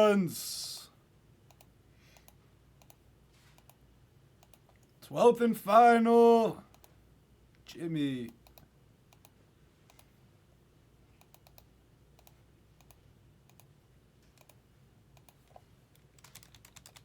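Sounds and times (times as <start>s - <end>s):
low room hum: 0.0s - 17.0s
computer keyboard clicks: 16.0s - 17.0s.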